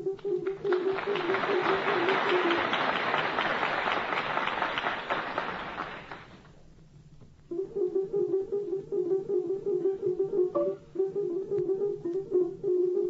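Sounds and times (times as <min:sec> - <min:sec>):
audience applauding: 0:00.4 - 0:06.5.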